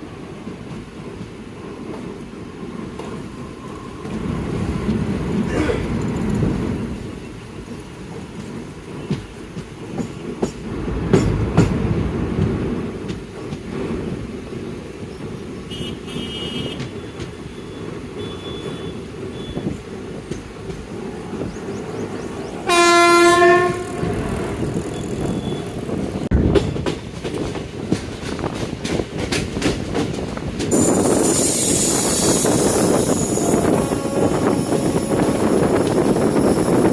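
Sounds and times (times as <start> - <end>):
train wheel and coach rumble: 0.0 - 36.9
locomotive horn blast: 15.7 - 16.9, 22.6 - 25.8, 32.6 - 36.9.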